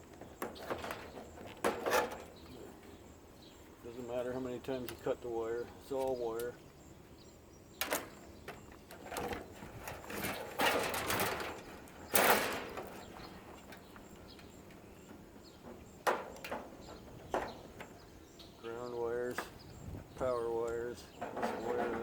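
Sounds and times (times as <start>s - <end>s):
wires scraping and rustling: 0.0s - 2.9s, 7.8s - 18.0s, 19.3s - 22.0s.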